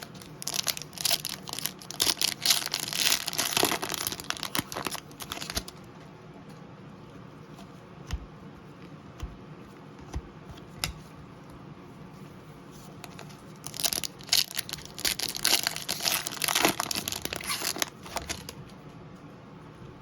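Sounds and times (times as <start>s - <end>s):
wrapper crinkling and tearing: 0.0s - 5.8s, 13.0s - 18.6s.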